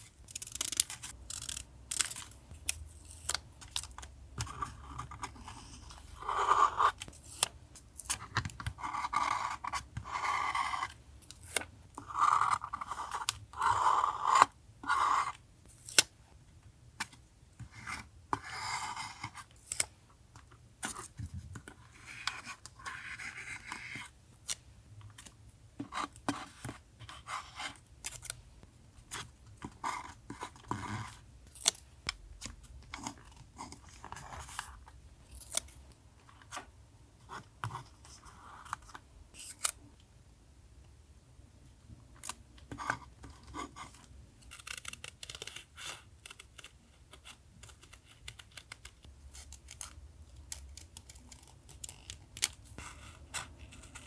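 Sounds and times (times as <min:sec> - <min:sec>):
scissors cutting paper: 0:00.2 - 0:02.4, 0:44.5 - 0:54.0
paper handling clicks and snips: 0:00.2 - 0:04.7.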